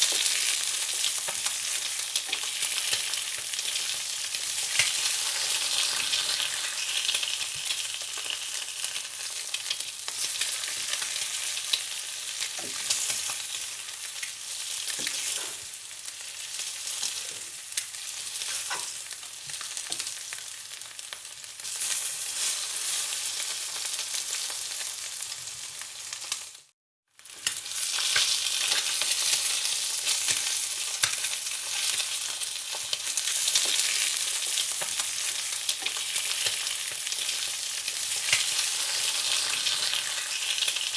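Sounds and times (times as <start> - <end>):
food sizzling in hot oil: 0.0 - 40.9.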